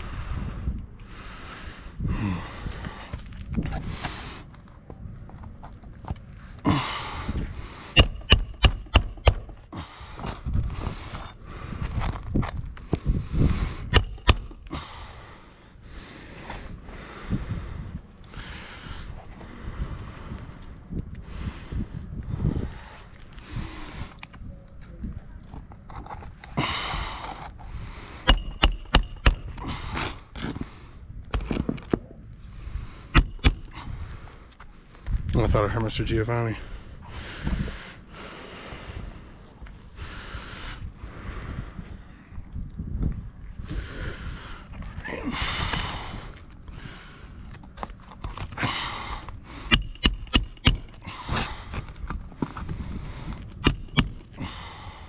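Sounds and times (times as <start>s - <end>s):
hammer striking roofing nails: 8.0s - 9.6s, 13.9s - 14.7s, 28.3s - 29.6s, 33.2s - 33.7s, 49.7s - 51.0s, 53.6s - 54.2s
scraping and handling of shingles: 25.4s - 32.1s, 47.5s - 52.7s.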